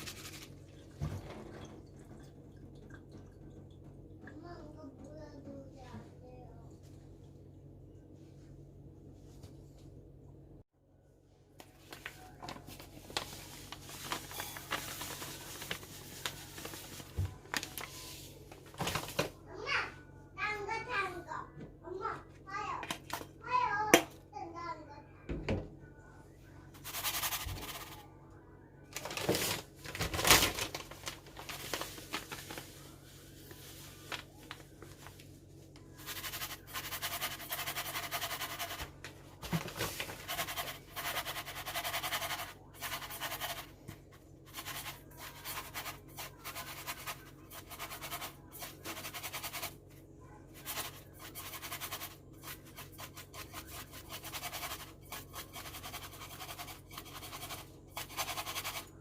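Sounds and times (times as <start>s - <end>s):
faint steady hum: 0.0s - 59.0s.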